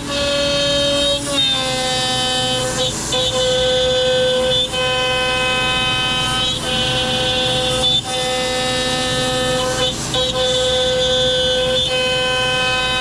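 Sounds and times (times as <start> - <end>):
router spindle whine cutting wood: 0.0 - 13.0.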